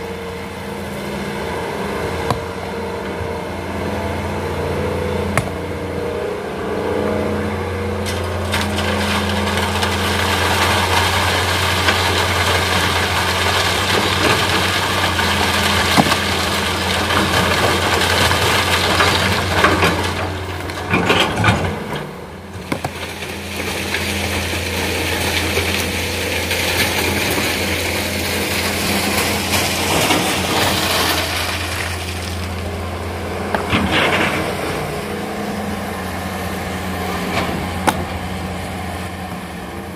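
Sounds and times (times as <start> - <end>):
excavator diesel engine: 0.0 - 39.9
sand and stone scraping clattering: 22.6 - 32.7.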